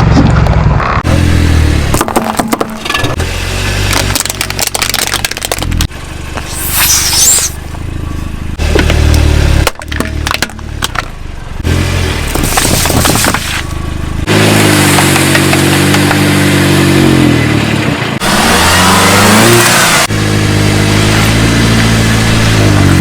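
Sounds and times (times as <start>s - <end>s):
objects crushed under car tyres: 3.8s - 5.9s, 12.3s - 13.7s.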